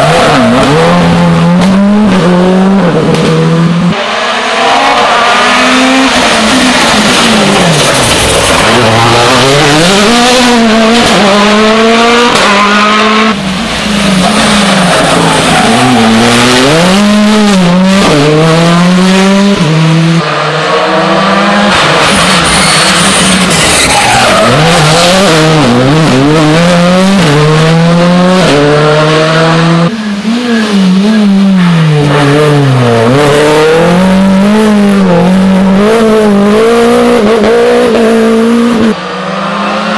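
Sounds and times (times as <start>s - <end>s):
rally car engines revving: 0.0s - 39.9s
tyre squeal: 22.1s - 25.2s.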